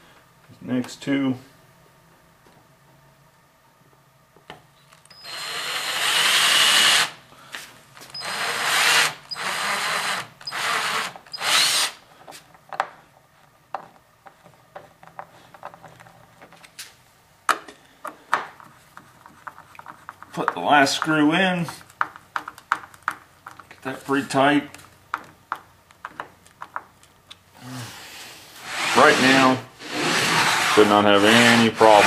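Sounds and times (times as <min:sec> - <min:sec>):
power drill boring into wood: 0:05.1 - 0:07.2, 0:08.2 - 0:12.0, 0:28.6 - 0:32.0.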